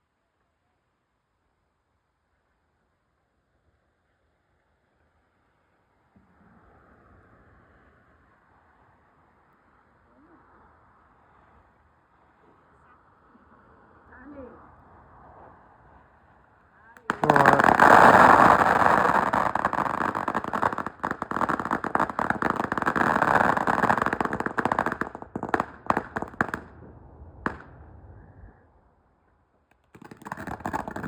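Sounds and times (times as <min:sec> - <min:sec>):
fireworks crackling and popping: 0:17.0 - 0:27.8, 0:29.7 - 0:31.0.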